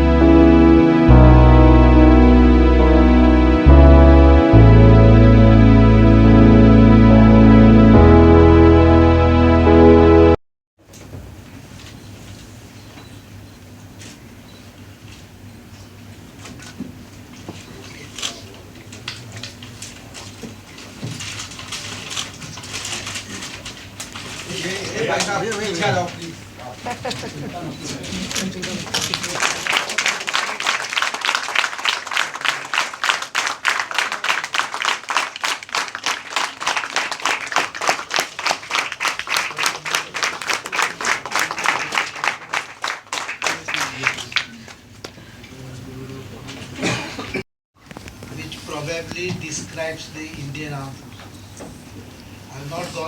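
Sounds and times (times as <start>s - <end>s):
audience applauding: 28.2s - 44.9s.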